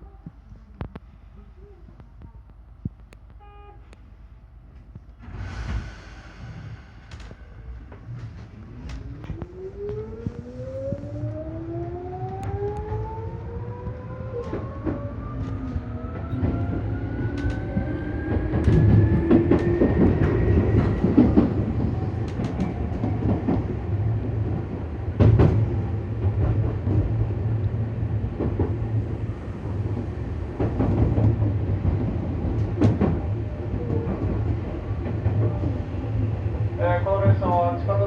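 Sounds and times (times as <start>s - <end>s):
low train rumble: 0.0s - 38.0s.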